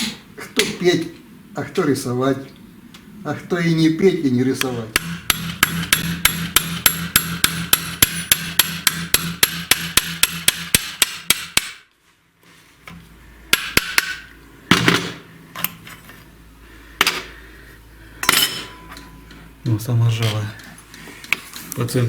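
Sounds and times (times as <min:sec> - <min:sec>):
rapid metallic tapping: 0:05.0 - 0:11.8
tools clattering on metal: 0:18.2 - 0:19.4.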